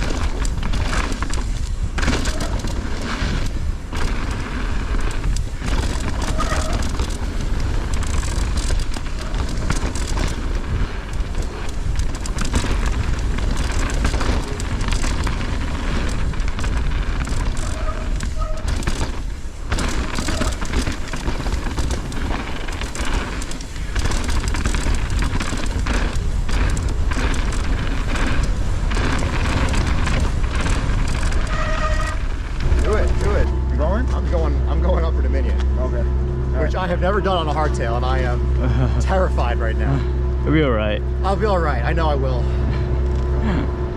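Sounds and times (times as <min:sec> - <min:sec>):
bike knocks and rattles: 0:00.0 - 0:34.5
wind buffeting microphone: 0:00.0 - 0:39.2
low rumble: 0:00.0 - 0:43.9.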